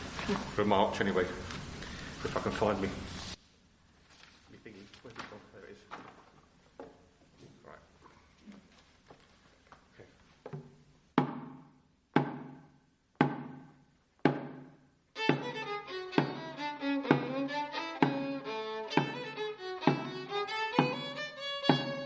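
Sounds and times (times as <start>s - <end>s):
drum beats: 13.2s - 22.0s
fiddle playing march tune: 15.2s - 22.0s.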